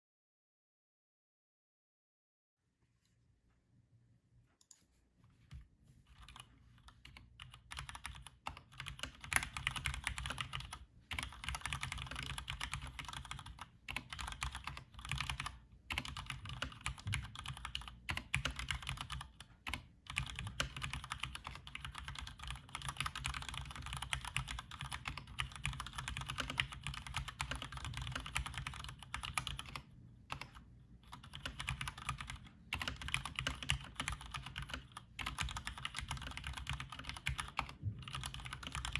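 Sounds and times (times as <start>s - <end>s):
mechanical keyboard typing: 7.0s - 38.9s.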